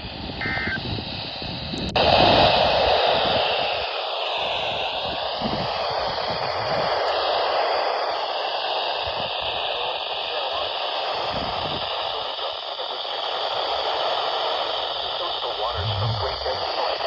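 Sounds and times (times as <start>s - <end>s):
radio static hiss: 0.4s - 0.8s, 8.7s - 17.0s
low thumps: 15.8s - 16.5s.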